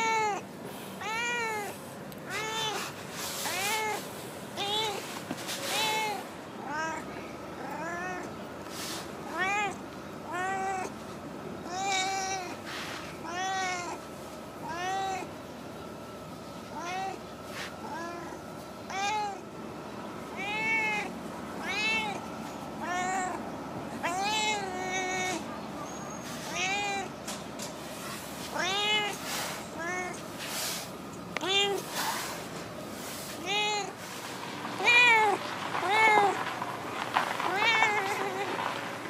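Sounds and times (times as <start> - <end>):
cat meowing: 0.0 - 0.4, 1.0 - 8.3, 9.2 - 11.0, 11.6 - 12.6, 13.2 - 14.0, 14.6 - 15.3, 16.7 - 17.2, 17.8 - 19.4, 20.4 - 22.2, 22.8 - 23.4, 24.0 - 25.4, 26.4 - 27.1, 28.5 - 30.2, 31.4 - 32.0, 33.4 - 34.0, 34.8 - 36.4, 37.5 - 38.6.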